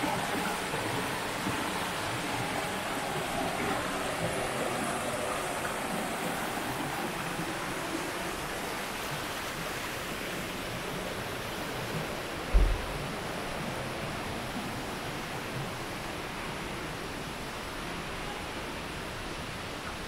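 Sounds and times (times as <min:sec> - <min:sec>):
flowing water rushing: 0:00.0 - 0:20.0
low thump: 0:12.5 - 0:13.0.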